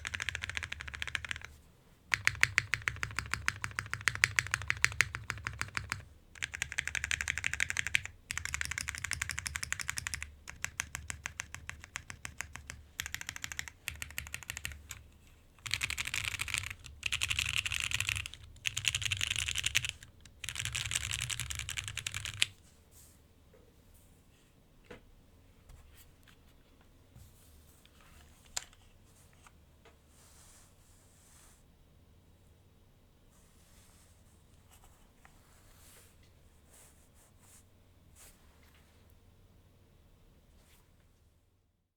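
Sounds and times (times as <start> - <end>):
typing on mechanical keyboard: 0.0 - 22.6.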